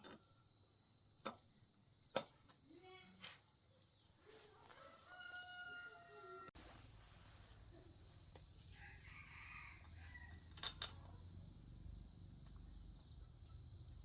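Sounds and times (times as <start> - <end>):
rooster crowing: 4.7 - 6.6, 8.8 - 10.5.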